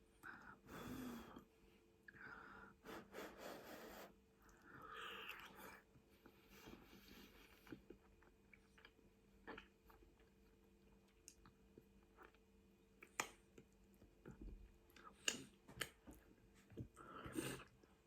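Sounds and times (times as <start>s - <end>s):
person chewing food: 6.6s - 18.0s
mouth clicks and smacks: 13.0s - 16.2s.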